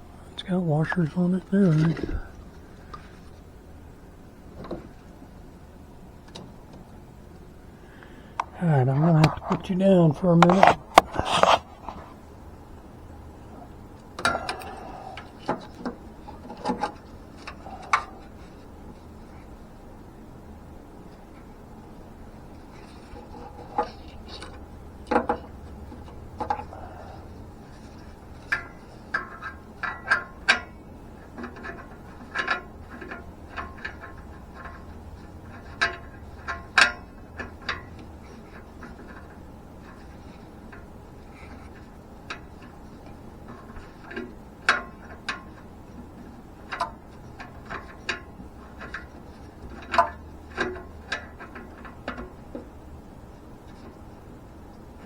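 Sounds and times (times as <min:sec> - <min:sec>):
faint low hum: 0:00.0 - 0:55.0.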